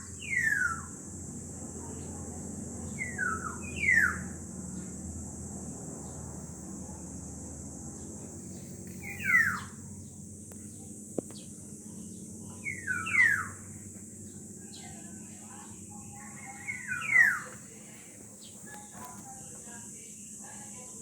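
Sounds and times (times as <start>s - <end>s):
bird calling: 3.0s - 4.4s, 8.8s - 9.8s, 12.5s - 13.8s, 14.6s - 19.2s.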